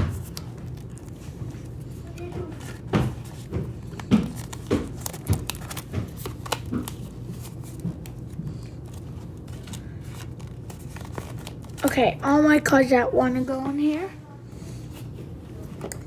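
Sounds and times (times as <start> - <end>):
trading cards tapping and shuffling: 0.0 - 12.0.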